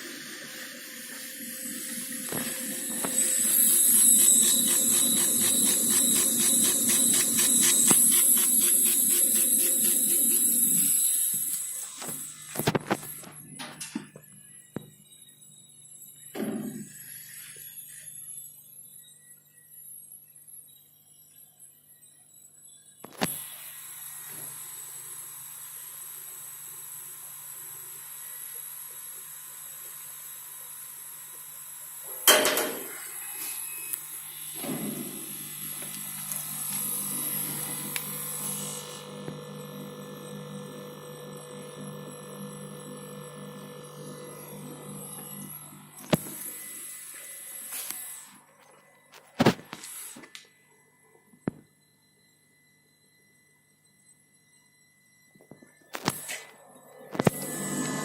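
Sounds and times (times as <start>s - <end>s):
laser cutter humming and hissing: 0.0s - 13.4s, 23.1s - 53.3s, 55.9s - 58.0s.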